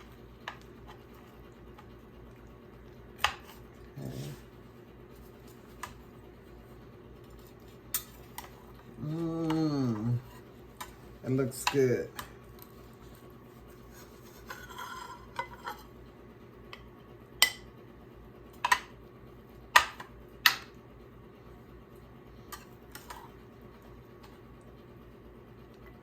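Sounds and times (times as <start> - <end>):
metal utensil scraping baking dish: 13.8 - 15.9.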